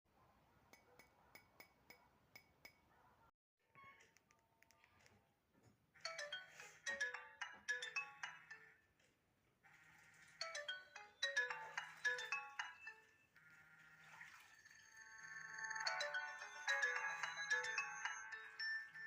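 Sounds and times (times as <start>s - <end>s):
phone ringtone tones: 6.0s - 8.8s, 9.8s - 19.0s
ringtone melody: 6.0s - 8.9s, 9.7s - 19.0s.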